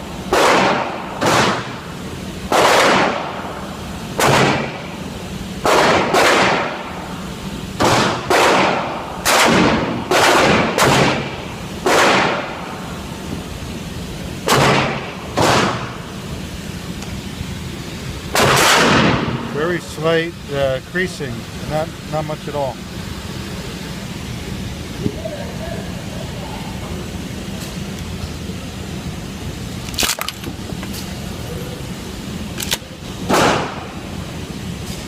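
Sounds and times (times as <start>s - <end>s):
gunshots with echo: 0.3s - 1.7s, 2.5s - 3.3s, 4.2s - 4.8s, 5.6s - 6.8s, 7.8s - 12.5s, 14.5s - 15.9s, 18.4s - 19.5s, 33.3s - 33.8s.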